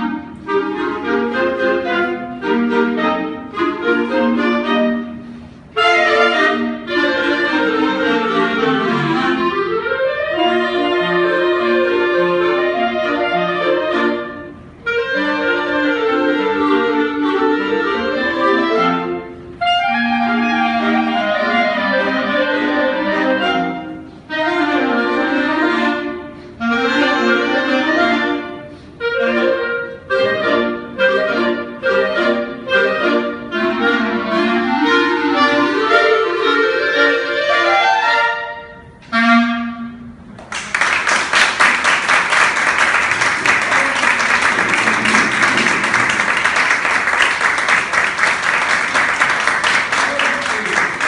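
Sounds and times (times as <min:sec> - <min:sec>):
live instrumental music: 0:00.0 - 0:51.0
audience applauding: 0:40.4 - 0:51.0.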